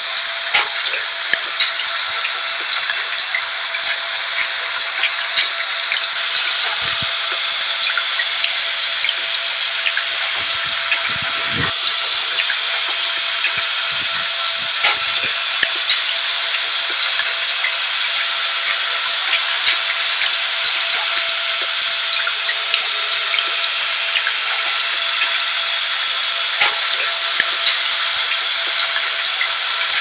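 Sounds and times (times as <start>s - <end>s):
small drop ticks: 0.2s - 11.7s
vacuum cleaner running: 4.1s - 17.2s.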